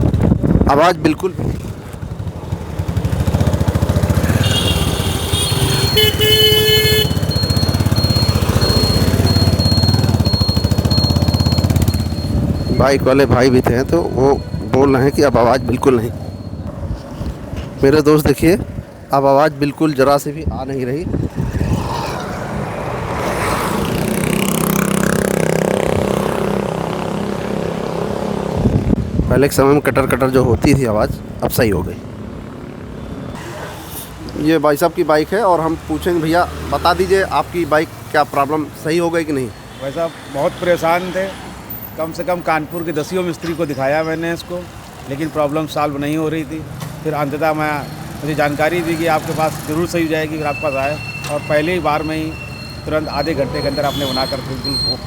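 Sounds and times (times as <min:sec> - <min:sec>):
motorcycle engine running: 0:01.6 - 0:14.7, 0:23.8 - 0:29.1
vehicle horn: 0:04.2 - 0:07.8.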